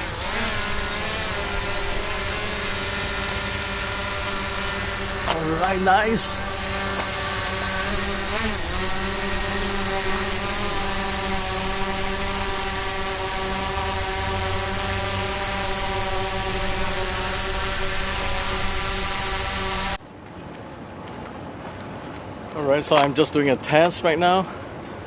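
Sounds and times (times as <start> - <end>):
drone propellers buzzing: 0.0 - 20.0.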